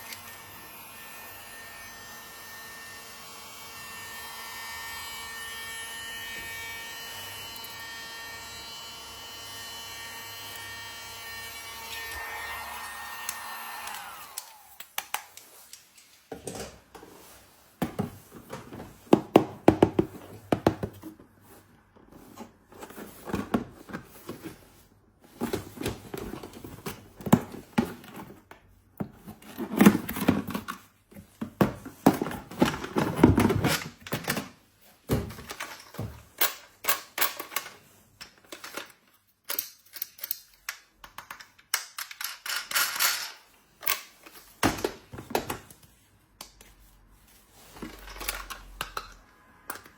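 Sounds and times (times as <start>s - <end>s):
plastic toys tapping and clicking: 14.4s - 16.0s, 35.4s - 45.7s.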